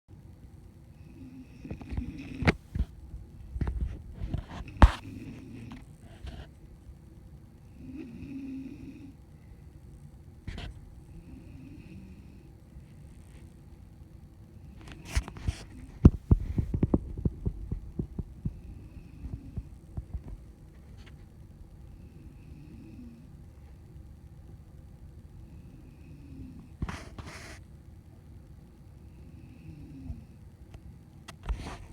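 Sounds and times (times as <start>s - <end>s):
person snoring: 7.7s - 9.2s.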